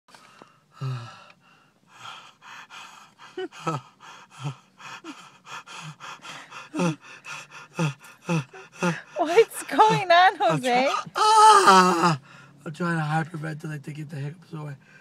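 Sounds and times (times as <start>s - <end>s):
man panting rapidly: 0.3s - 11.1s
man hiccuping: 9.9s - 12.2s.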